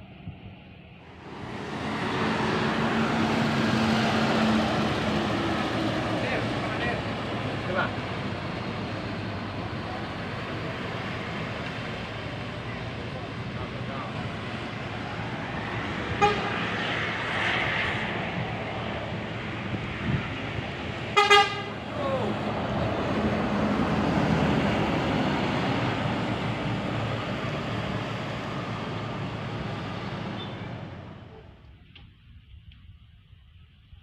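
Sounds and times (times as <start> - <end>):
bus engines rumbling: 0.0 - 33.7
traffic: 0.0 - 34.0
bus horn blasts: 16.1 - 16.8, 21.1 - 21.9, 30.3 - 30.8.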